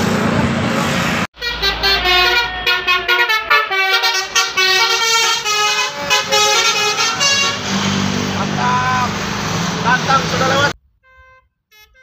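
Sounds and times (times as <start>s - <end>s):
musical air horn tune: 1.4s - 8.1s, 11.0s - 12.0s.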